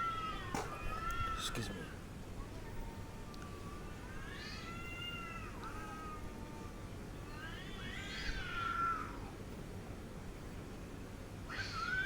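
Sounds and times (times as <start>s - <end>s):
angry cat yowling: 11.5s - 12.0s.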